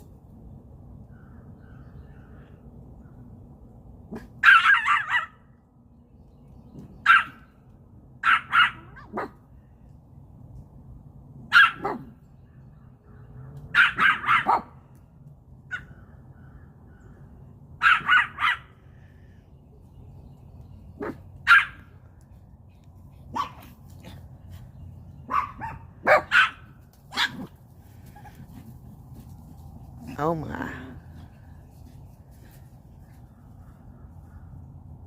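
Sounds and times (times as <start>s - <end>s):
dog barking: 4.1s - 5.4s, 7.0s - 7.4s, 8.2s - 9.4s, 11.5s - 12.2s, 13.7s - 14.7s, 17.8s - 18.7s, 21.0s - 21.8s, 23.3s - 23.7s, 25.2s - 27.5s.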